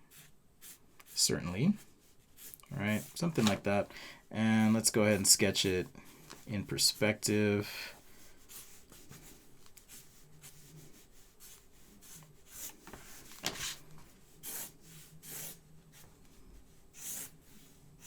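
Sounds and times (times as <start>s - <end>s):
marker sketching on paper: 0.0s - 3.5s, 8.2s - 18.0s.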